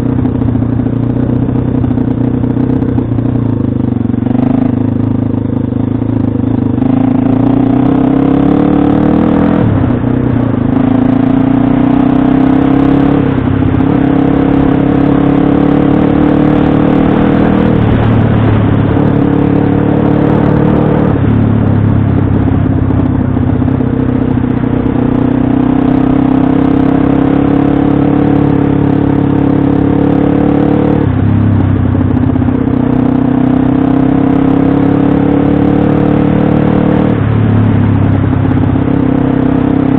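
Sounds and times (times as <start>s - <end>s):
pit bike engine revving: 6.6s - 9.8s, 10.6s - 21.4s.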